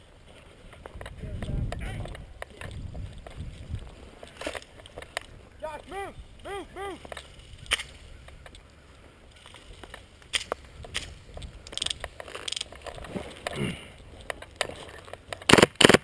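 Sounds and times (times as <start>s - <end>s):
clicks and rustling of movement: 0.3s - 5.4s, 7.0s - 15.7s
airsoft rifle full-auto burst: 15.5s - 16.0s.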